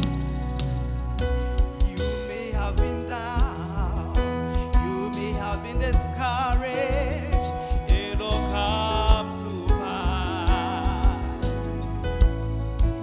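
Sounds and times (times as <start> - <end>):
gospel singing with vibrato: 0.0 - 12.2
bass: 0.0 - 13.0
steady drum beat: 0.0 - 13.0.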